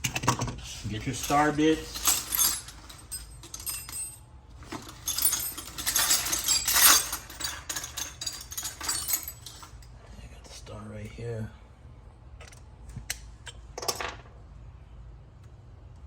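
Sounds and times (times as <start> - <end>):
metal tool bits clinking: 0.8 - 9.9.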